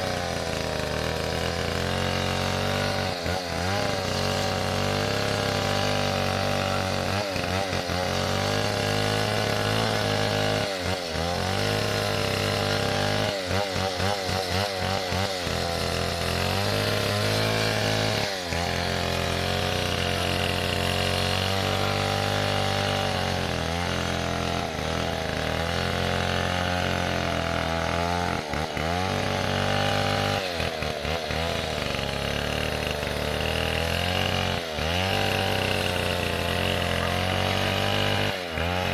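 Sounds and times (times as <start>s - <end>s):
chainsaw running at high speed: 0.0s - 38.9s.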